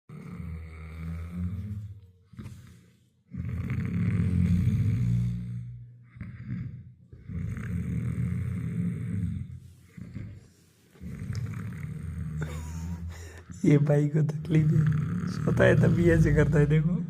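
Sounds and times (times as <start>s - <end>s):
man snoring: 0.1s - 17.0s.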